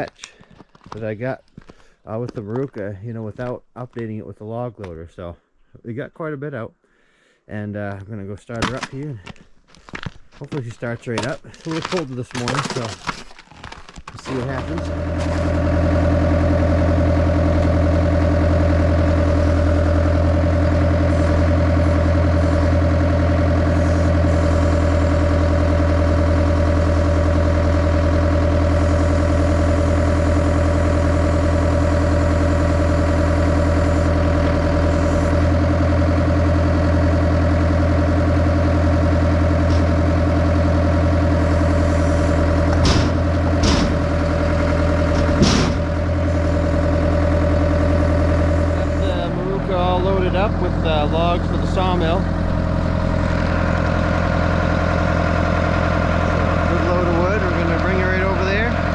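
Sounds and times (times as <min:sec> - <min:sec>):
diesel engine idling: 0:14.2 - 0:58.9
short knocks: 0:42.7 - 0:44.2.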